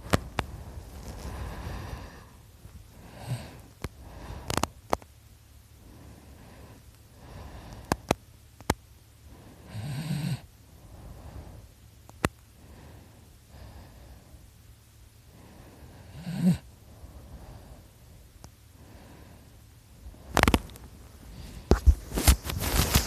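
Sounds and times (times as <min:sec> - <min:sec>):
soft breathing: 0:00.0 - 0:05.0, 0:05.6 - 0:08.3, 0:09.1 - 0:23.0
person snoring: 0:01.1 - 0:04.7, 0:09.4 - 0:11.6, 0:15.3 - 0:17.8.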